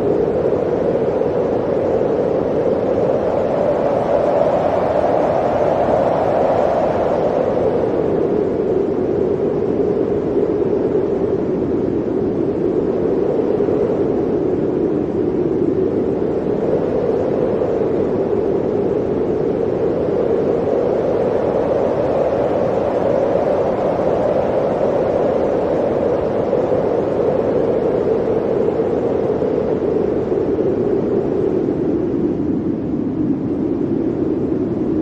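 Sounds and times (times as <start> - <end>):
blizzard wind blowing: 0.0 - 35.0.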